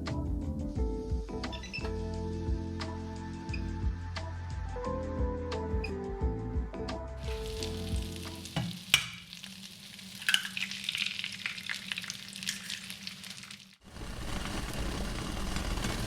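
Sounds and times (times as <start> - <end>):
food sizzling in a frying pan: 7.2 - 16.0.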